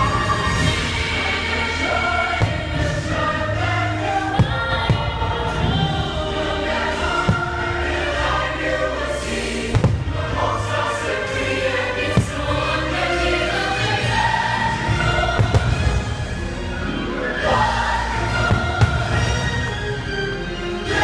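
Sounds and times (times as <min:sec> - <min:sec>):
choir singing: 0:00.0 - 0:21.0
sharp thumps: 0:12.1 - 0:12.6.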